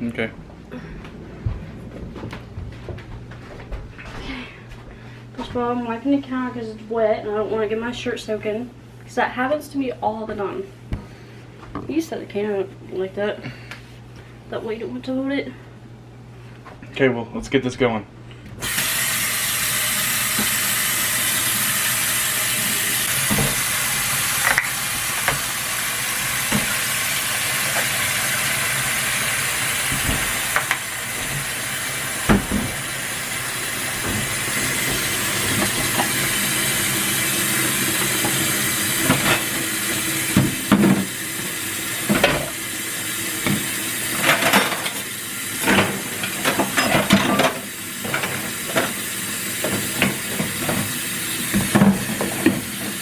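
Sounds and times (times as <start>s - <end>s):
tap water running: 18.5s - 53.0s.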